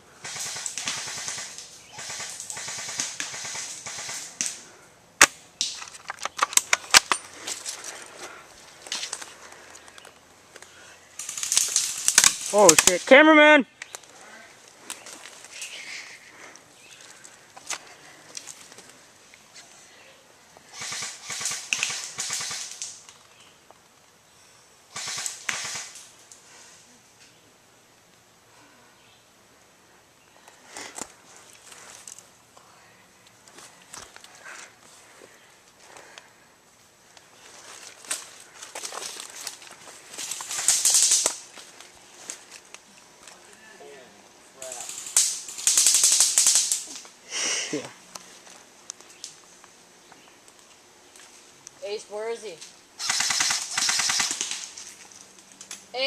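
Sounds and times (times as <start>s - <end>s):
airsoft guns firing: 0.2s - 5.8s, 20.7s - 23.0s, 24.9s - 26.1s, 40.5s - 41.4s, 44.9s - 47.0s, 53.0s - 54.8s
rustling movement: 5.6s - 20.0s, 30.4s - 47.2s.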